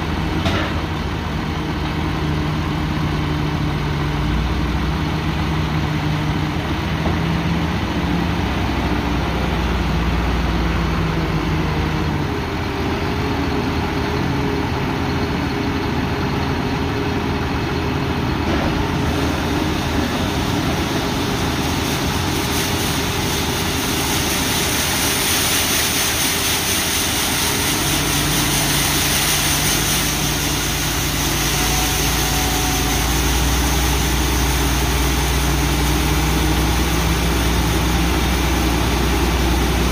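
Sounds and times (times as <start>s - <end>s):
combine harvester droning: 0.0s - 39.9s
hiss: 18.7s - 39.9s.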